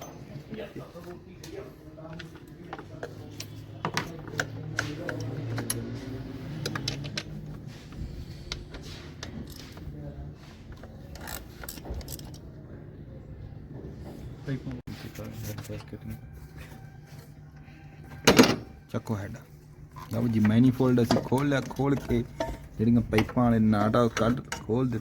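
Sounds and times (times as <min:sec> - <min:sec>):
metal tools clinking against engine: 0:03.0 - 0:07.7, 0:10.8 - 0:12.5, 0:19.9 - 0:25.0.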